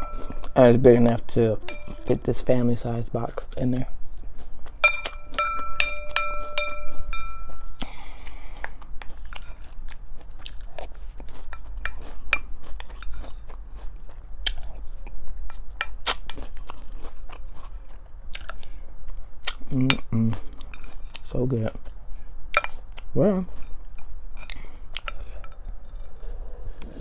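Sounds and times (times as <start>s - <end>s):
ringing chime-like tone: 0.0s - 0.6s, 1.6s - 2.2s, 4.9s - 7.8s
crunchy cereal being chewed: 2.8s - 5.2s, 7.0s - 22.0s.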